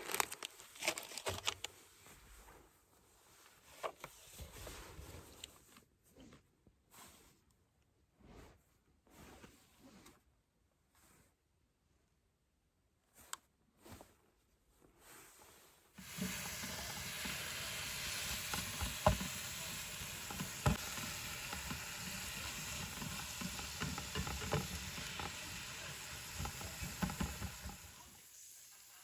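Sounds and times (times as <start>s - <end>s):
crackles and clicks: 0.0s - 1.7s
food sizzling in a pan: 16.0s - 29.0s.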